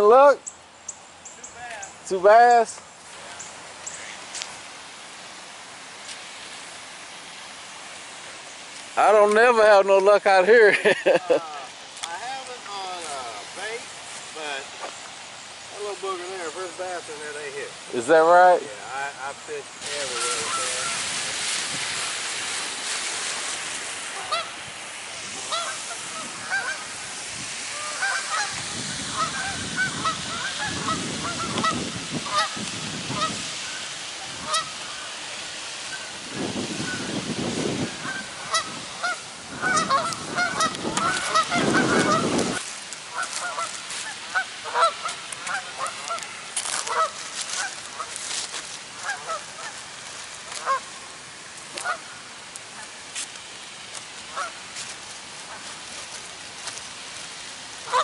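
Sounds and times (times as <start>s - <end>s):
geese honking: 19.8s - 37.2s, 37.8s - 49.8s, 50.5s - 50.9s, 51.7s - 52.9s, 54.3s - 54.6s.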